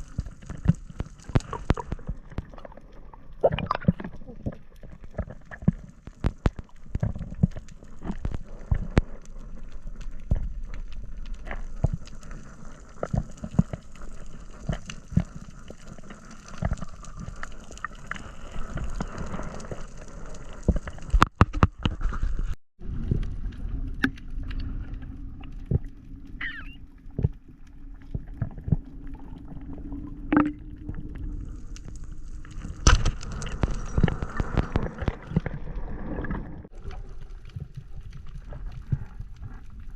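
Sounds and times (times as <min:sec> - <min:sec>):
underwater clicks and knocks: 0:03.4 - 0:09.2, 0:23.0 - 0:26.0, 0:30.3 - 0:31.2
low underwater rumble: 0:22.0 - 0:39.9.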